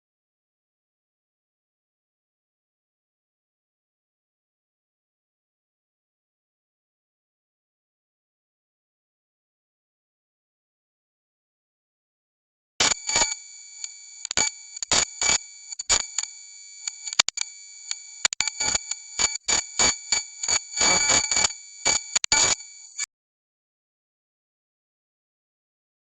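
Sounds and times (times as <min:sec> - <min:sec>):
high-pitched electronic buzz: 0:12.8 - 0:23.1
static crackles: 0:12.8 - 0:23.1.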